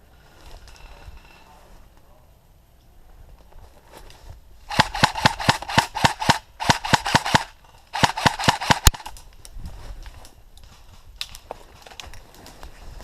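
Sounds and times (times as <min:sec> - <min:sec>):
airsoft rifle rapid shots: 0:04.7 - 0:09.1.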